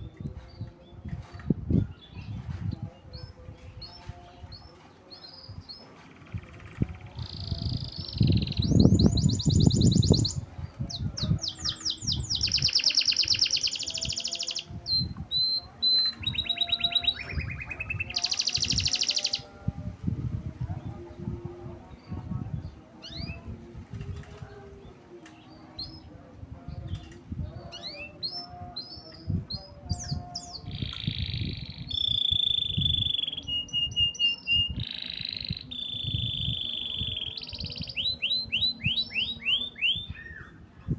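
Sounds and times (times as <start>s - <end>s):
canary singing trills: 3.2s - 19.6s, 26.7s - 40.6s.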